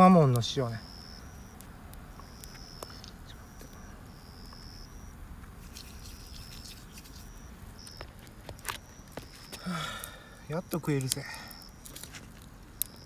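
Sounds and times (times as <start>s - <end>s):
fire crackling and popping: 0.0s - 13.0s.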